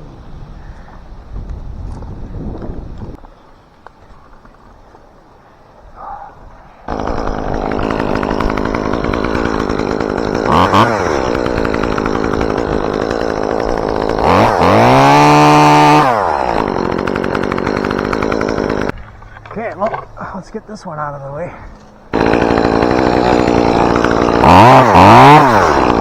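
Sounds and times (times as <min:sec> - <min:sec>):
chainsaw idling and revving: 0:06.9 - 0:19.0, 0:22.1 - 0:26.0.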